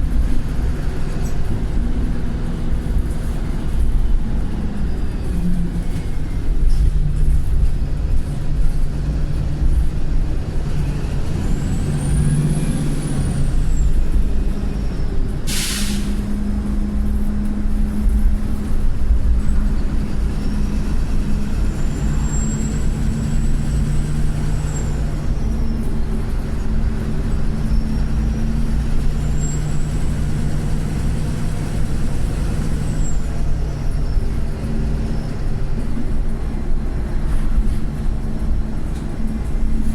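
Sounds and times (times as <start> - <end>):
bus engine pulling: 0.0 - 39.9
air brake hiss: 15.5 - 16.3.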